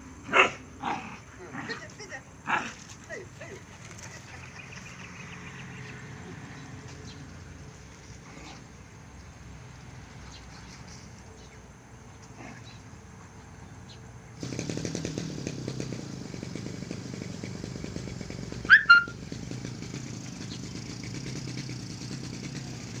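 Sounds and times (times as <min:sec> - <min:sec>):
engine running: 0:00.0 - 0:23.0
high-pitched cries: 0:18.6 - 0:19.2.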